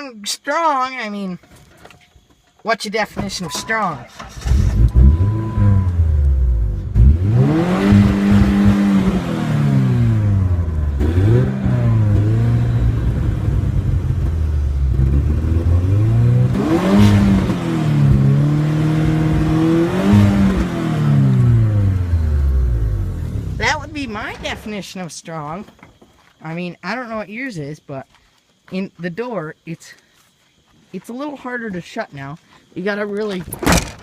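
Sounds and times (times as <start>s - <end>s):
pickup engine revving: 3.5s - 24.8s.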